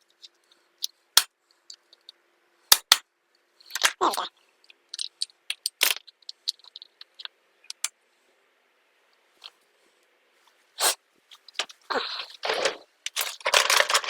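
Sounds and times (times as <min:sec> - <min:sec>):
small metal parts clicking: 0:04.7 - 0:07.9, 0:11.5 - 0:14.0.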